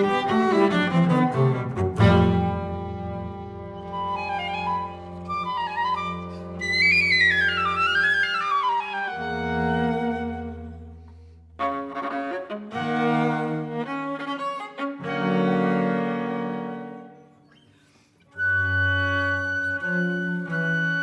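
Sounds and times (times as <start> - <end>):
double bass: 0.0 - 5.3
viola: 0.0 - 21.0.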